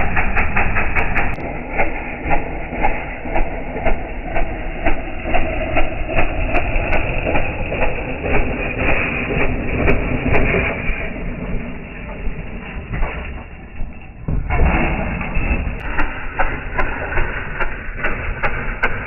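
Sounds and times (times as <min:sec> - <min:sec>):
small engine low rumble with knocks: 0:00.0 - 0:19.0.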